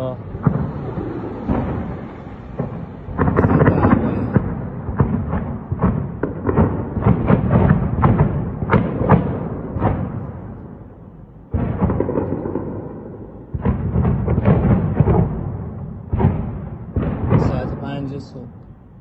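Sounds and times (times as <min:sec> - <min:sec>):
heavy low rumble: 0:00.0 - 0:07.2, 0:16.9 - 0:19.0
distant explosion bangs: 0:00.0 - 0:19.0
loud boom: 0:00.0 - 0:19.0.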